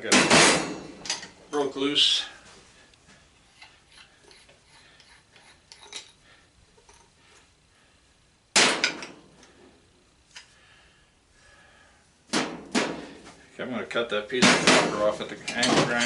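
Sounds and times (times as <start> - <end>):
loud metal clank: 0.1 - 1.3.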